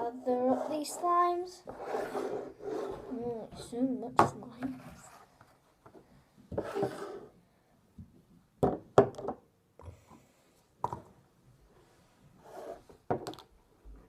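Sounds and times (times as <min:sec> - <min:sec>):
rustling scrape: 0:00.4 - 0:03.3, 0:04.7 - 0:05.6, 0:06.6 - 0:07.3.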